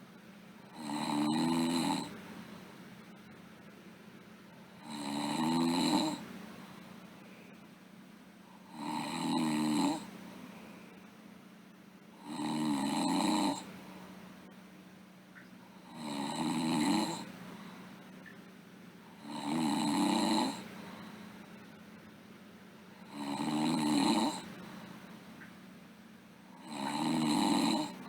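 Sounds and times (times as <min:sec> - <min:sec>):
quiet breathing: 0:00.6 - 0:03.4, 0:04.5 - 0:11.2, 0:12.2 - 0:14.6, 0:15.6 - 0:18.3, 0:19.0 - 0:22.1, 0:22.9 - 0:25.6
girl snoring: 0:00.7 - 0:02.2, 0:04.8 - 0:06.2, 0:08.7 - 0:10.1, 0:12.2 - 0:13.7, 0:15.8 - 0:17.3, 0:19.1 - 0:20.7, 0:23.0 - 0:24.5, 0:26.6 - 0:28.0.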